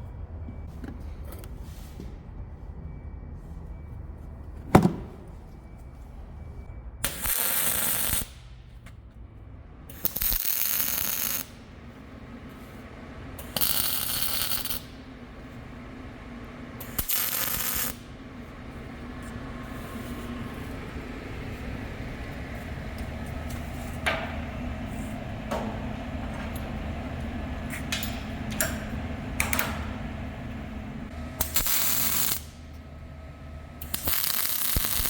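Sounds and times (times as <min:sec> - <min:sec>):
welder crackling hiss: 0:16.9 - 0:18.0, 0:31.4 - 0:32.4, 0:33.9 - 0:35.0.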